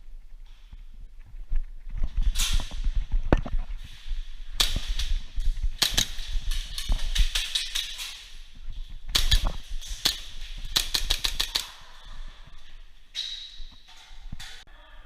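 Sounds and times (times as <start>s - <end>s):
airsoft guns firing: 4.6s - 7.9s, 9.1s - 12.0s.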